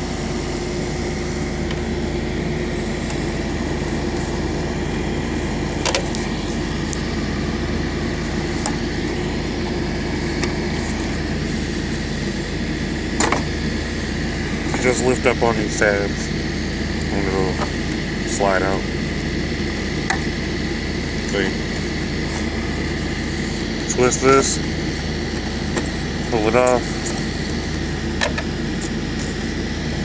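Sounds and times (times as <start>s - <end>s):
mechanical hum: 0.0s - 30.0s.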